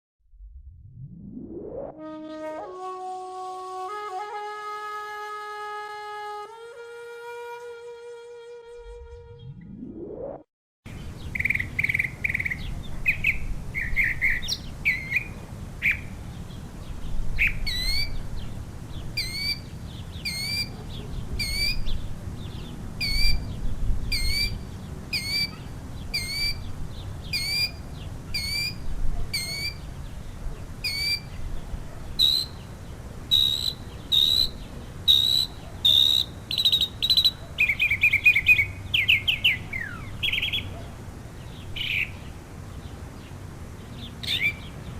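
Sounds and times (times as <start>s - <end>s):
mockingbird singing: 11.0s - 16.1s, 17.4s - 18.5s, 19.2s - 29.9s, 30.8s - 31.4s, 32.2s - 40.8s, 41.4s - 42.3s, 44.0s - 44.9s.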